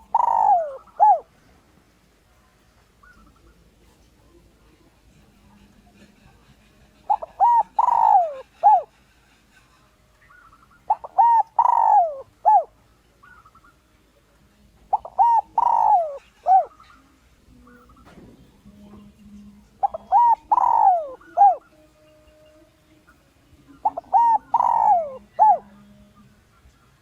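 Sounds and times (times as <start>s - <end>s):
dove cooing: 0.0s - 1.4s, 5.2s - 9.6s, 10.3s - 13.8s, 14.9s - 18.2s, 19.8s - 21.8s, 23.7s - 26.6s
faint high chirps: 14.9s - 27.0s.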